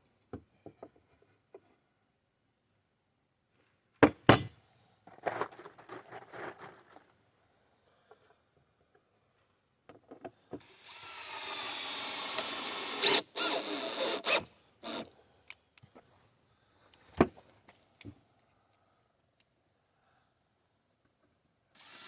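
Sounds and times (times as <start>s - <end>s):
power tool whining: 10.6s - 15.1s.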